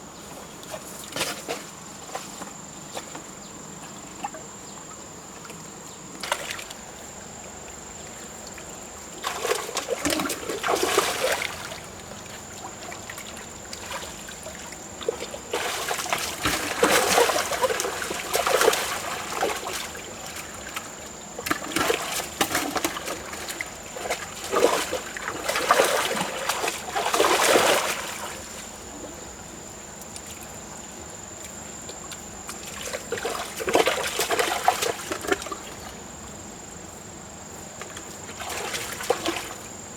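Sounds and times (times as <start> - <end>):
water splashing: 9.1 - 28.8, 32.5 - 35.9, 38.3 - 39.7.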